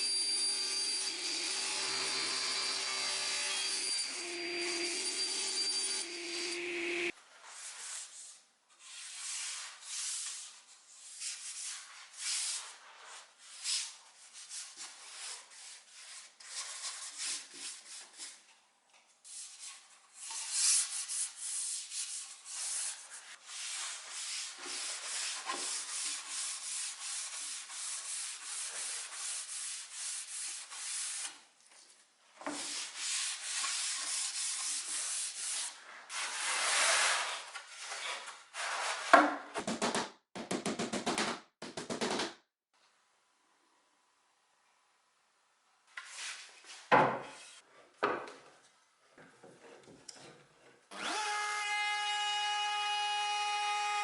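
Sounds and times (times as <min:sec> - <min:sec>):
hand sanding wood: 0:20.5 - 0:31.3, 0:32.6 - 0:37.4.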